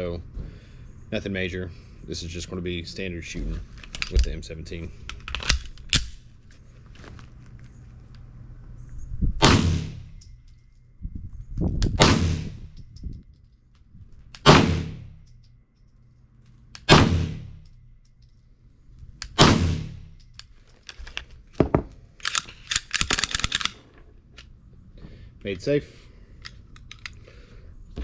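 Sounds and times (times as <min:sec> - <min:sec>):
pistol shots: 0:09.4 - 0:10.2, 0:12.0 - 0:12.7, 0:14.4 - 0:15.2, 0:16.8 - 0:17.6, 0:19.3 - 0:20.1
metallic clicking and clatter: 0:22.2 - 0:24.5.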